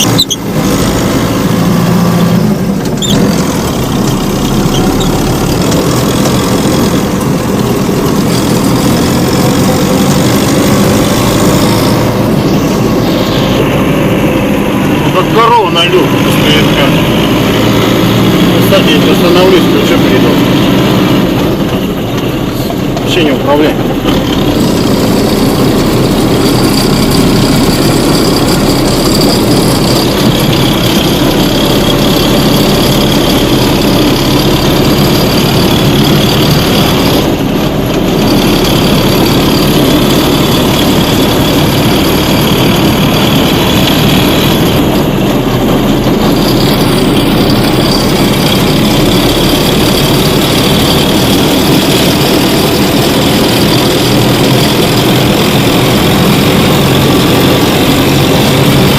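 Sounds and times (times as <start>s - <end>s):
tractor engine running: 0.0s - 58.9s.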